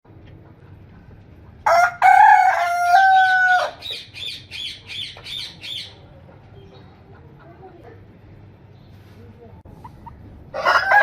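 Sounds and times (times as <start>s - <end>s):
rooster crowing: 1.6s - 3.9s, 10.5s - 11.0s.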